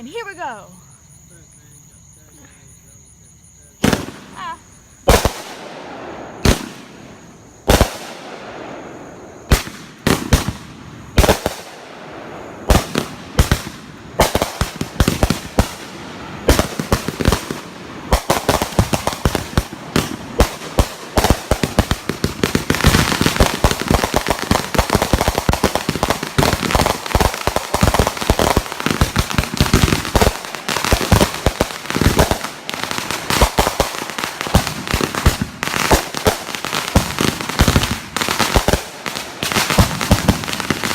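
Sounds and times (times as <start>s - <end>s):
fireworks bangs and crackling: 3.6s - 40.9s.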